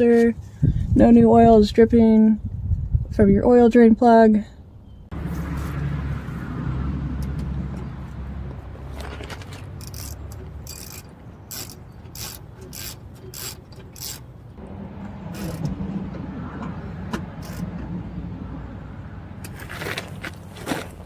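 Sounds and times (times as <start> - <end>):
hand ratchet clicking: 9.3 - 14.4, 17.4 - 17.7.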